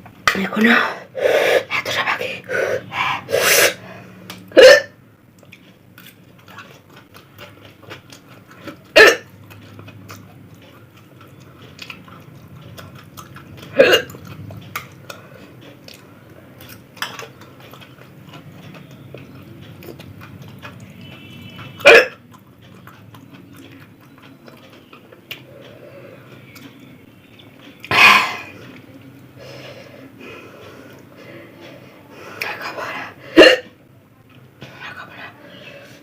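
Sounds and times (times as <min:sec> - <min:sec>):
woman hiccupping: 0:04.5 - 0:05.0, 0:13.7 - 0:14.1
chewing and mouth sounds: 0:05.3 - 0:29.3.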